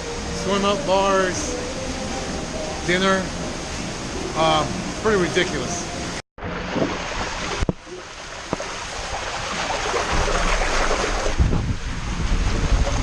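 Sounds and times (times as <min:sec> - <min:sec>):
water rushing and splashing: 0:00.0 - 0:13.0
wind buffeting microphone: 0:08.5 - 0:13.0.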